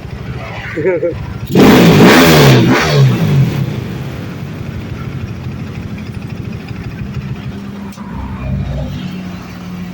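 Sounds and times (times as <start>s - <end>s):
motorcycle engine idling unevenly: 3.7s - 7.9s.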